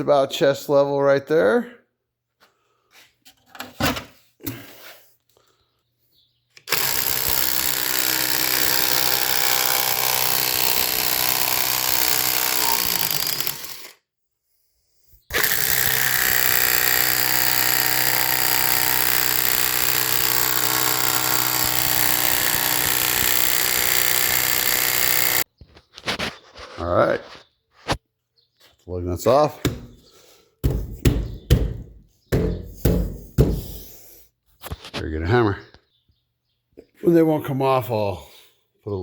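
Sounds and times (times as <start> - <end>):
impact wrench running: 6.7 - 14.0, 15.3 - 25.4, 29.7 - 30.0, 30.6 - 33.9.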